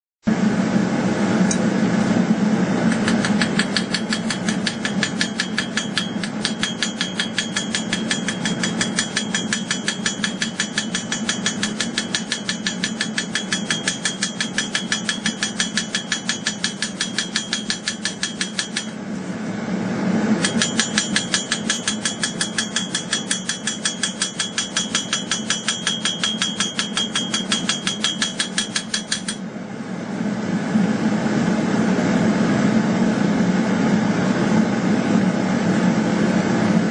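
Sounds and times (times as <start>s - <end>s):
steady low hum: 0.3s - 36.9s
hammer striking steel: 2.9s - 19.0s, 20.4s - 29.5s.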